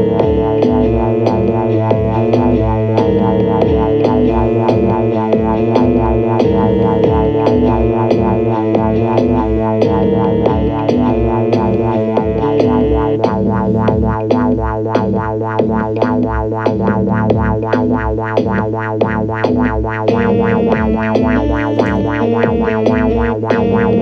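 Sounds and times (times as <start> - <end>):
instrumental music: 0.0 - 24.0.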